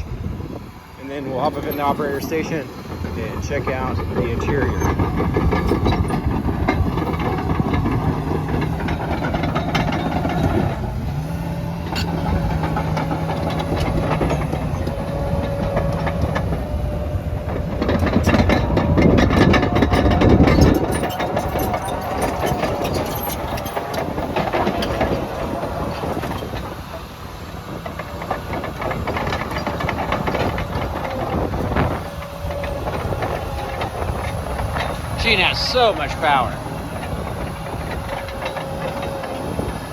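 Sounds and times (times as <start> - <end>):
diesel engine under load: 0.0 - 39.9
steel tracks clanking: 0.0 - 39.9.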